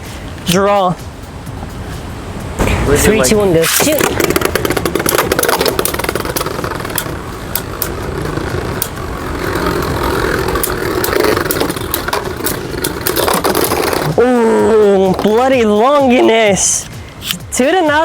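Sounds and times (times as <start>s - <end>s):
sharp clicks of tops hitting: 2.6s - 14.2s
spinning tops whirring: 3.2s - 16.2s.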